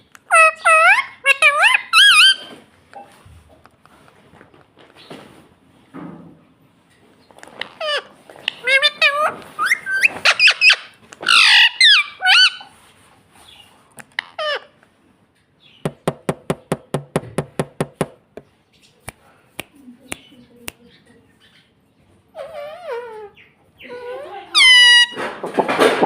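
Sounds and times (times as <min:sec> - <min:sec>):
parrot squawking: 0:00.3 - 0:02.5, 0:07.6 - 0:12.7, 0:14.1 - 0:14.8, 0:22.3 - 0:25.2.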